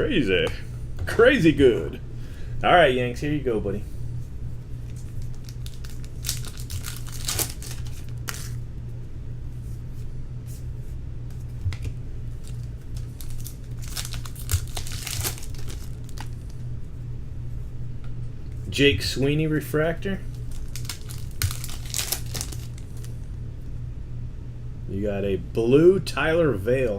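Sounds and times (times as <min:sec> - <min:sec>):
steady low hum: 0:00.0 - 0:26.9
foil wrappers tearing and crinkling: 0:04.9 - 0:08.6, 0:12.3 - 0:16.6, 0:20.2 - 0:23.2.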